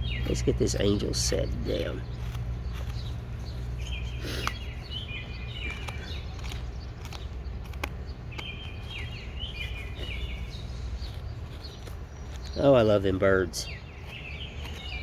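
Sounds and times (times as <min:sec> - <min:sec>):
low background rumble: 0:00.0 - 0:15.0
songbirds chirping: 0:00.0 - 0:15.0
sharp clicks: 0:00.2 - 0:10.2.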